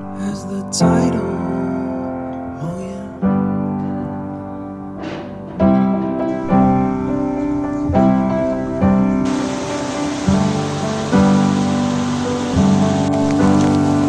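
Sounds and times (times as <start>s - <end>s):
piano playing slow chords: 0.0s - 14.0s
even hiss like rain: 6.2s - 14.0s.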